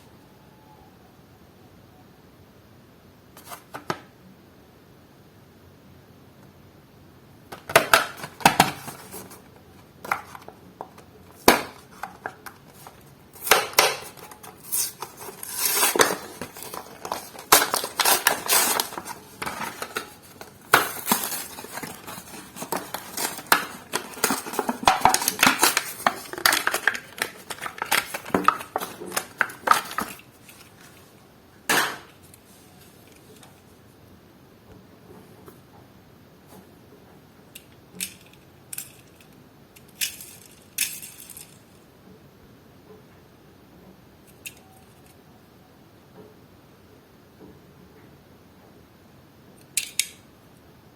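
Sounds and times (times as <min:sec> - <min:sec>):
packaging clicks and clatter: 0:07.6 - 0:31.0
plastic packaging crinkling: 0:07.6 - 0:31.1.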